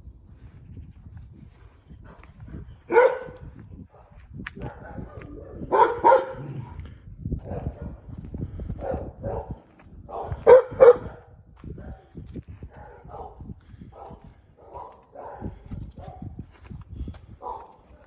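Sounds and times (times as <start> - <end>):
dog barking: 2.1 - 6.8, 7.4 - 8.0, 8.8 - 12.1, 12.8 - 16.4, 17.4 - 18.0.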